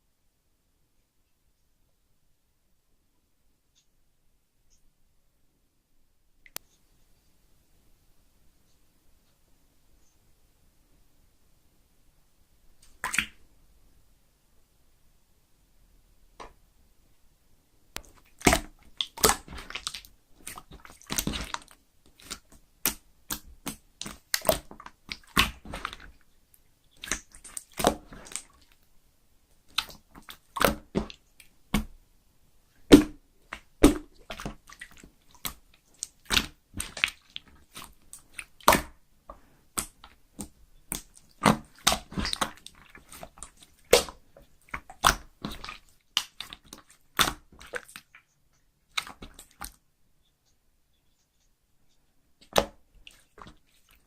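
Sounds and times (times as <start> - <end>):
slime squelching and popping: 12.8 - 13.4, 18.0 - 26.2, 26.9 - 28.8, 29.6 - 32.0, 32.8 - 39.0, 39.7 - 48.3, 48.9 - 49.8, 52.4 - 54.0.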